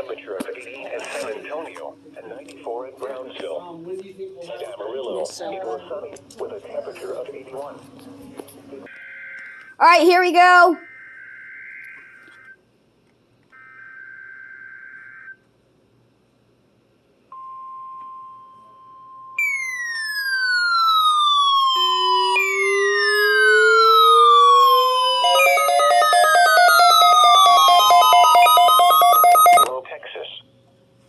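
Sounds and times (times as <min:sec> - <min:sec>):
sweeping siren-like alarm: 0:08.9 - 0:09.8, 0:10.5 - 0:12.6, 0:13.6 - 0:15.5, 0:18.2 - 0:29.7
buzzy digital header bursts: 0:19.4 - 0:29.6
steady alert tone: 0:19.4 - 0:29.7.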